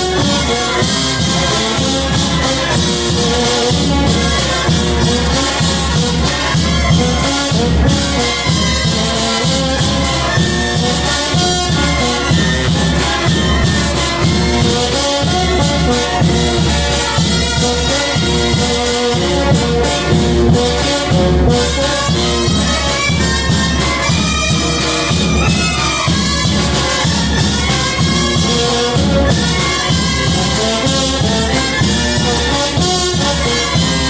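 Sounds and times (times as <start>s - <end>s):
brass band playing: 0.0s - 34.0s.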